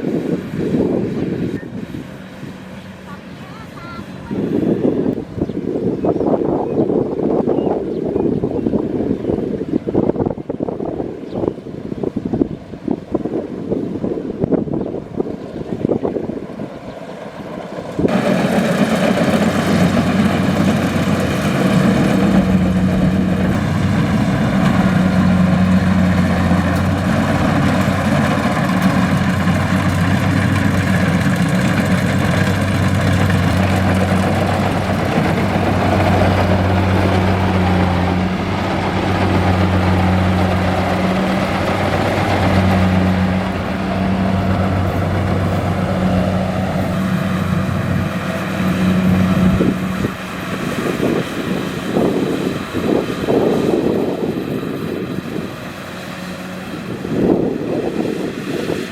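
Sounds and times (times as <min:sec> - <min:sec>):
wind noise: 0:00.0 - 0:03.0, 0:03.8 - 0:58.9
diesel engine running with low hum: 0:00.0 - 0:58.9.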